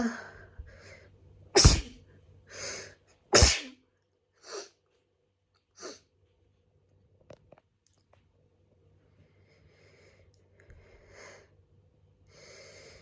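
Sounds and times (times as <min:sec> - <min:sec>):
breaths or sniffs: 0:01.6 - 0:01.9
person sneezing: 0:01.6 - 0:02.0, 0:03.4 - 0:03.8, 0:04.5 - 0:04.7.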